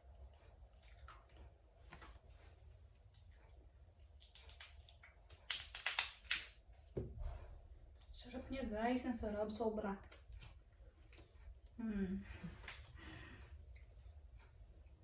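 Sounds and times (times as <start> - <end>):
sharp crackling clicks: 5.4 - 6.6.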